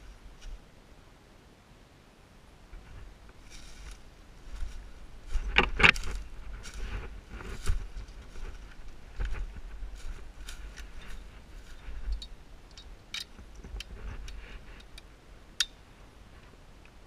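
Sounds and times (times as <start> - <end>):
wind rumble on microphone: 2.7 - 15.0
small clicks and rustles: 4.6 - 15.1.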